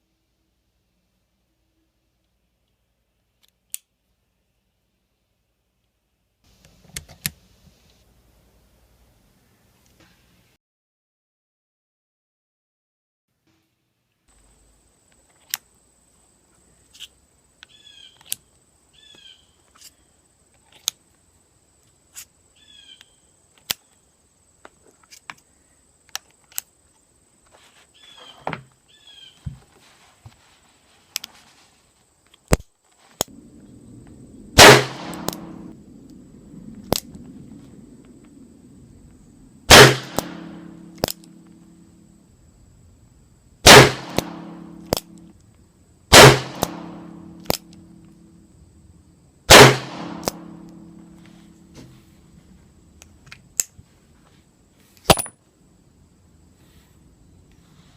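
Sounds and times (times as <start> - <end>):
loud gunshots: 34.6 - 35.8, 39.7 - 41.1, 43.6 - 44.9, 46.1 - 47.6, 49.5 - 51.0.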